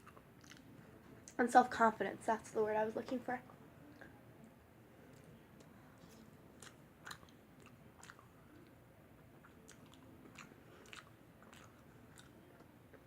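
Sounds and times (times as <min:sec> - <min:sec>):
person chewing: 0:00.0 - 0:00.7, 0:06.0 - 0:08.7, 0:09.4 - 0:13.0.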